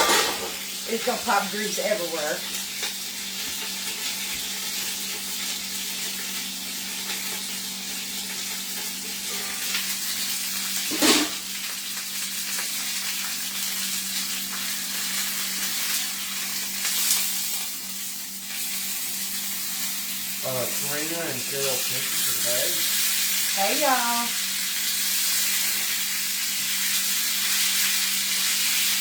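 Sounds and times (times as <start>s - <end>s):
meat sizzling in a pan: 0.0s - 29.0s.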